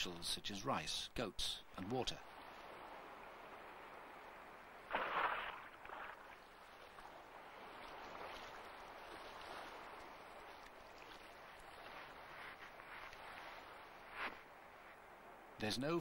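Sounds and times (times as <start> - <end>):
water lapping: 1.7 - 15.6
water splash: 4.7 - 13.8.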